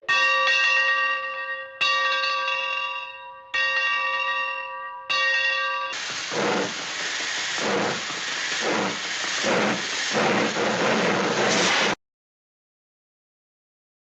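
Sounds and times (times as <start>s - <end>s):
steady hiss: 6.0s - 12.0s.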